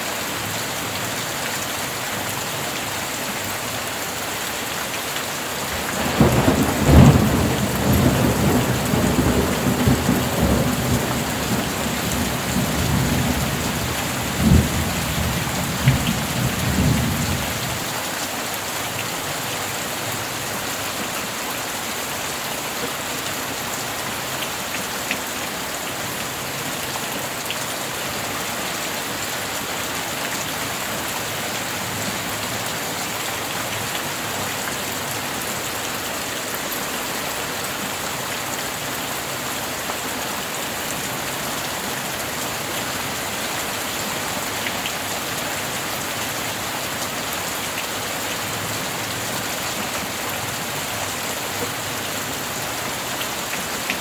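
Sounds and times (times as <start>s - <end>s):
heavy rain falling: 0.0s - 54.0s
thunder rumbling: 5.7s - 17.6s.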